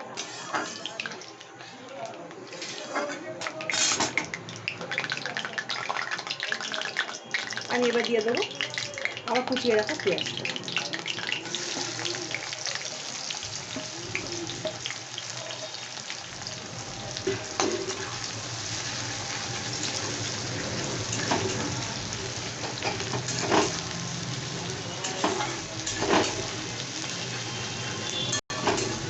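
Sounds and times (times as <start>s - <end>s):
onion sizzling in oil: 0.0s - 29.0s
spoon scraping pan: 0.1s - 1.8s, 2.4s - 4.2s.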